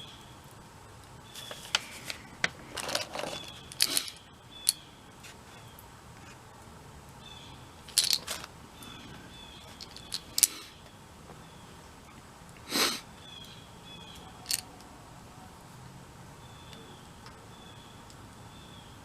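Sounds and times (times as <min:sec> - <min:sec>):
tool scrape or rattle: 0:01.4 - 0:04.2, 0:07.9 - 0:10.7
hand tools clicking and clinking: 0:01.4 - 0:04.8, 0:07.9 - 0:08.5, 0:09.6 - 0:10.7, 0:14.4 - 0:14.6.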